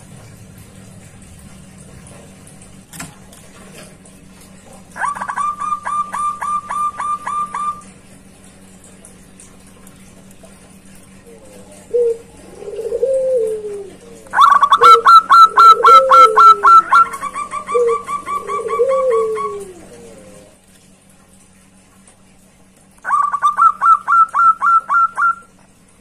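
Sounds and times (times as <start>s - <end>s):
doves cooing: 4.9s - 7.9s, 11.0s - 20.6s, 23.0s - 25.6s.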